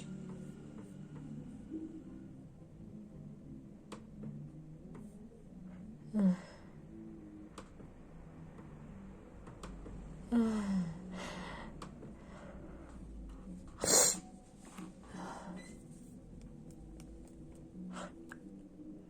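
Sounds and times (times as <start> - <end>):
person sneezing: 13.8 - 14.3.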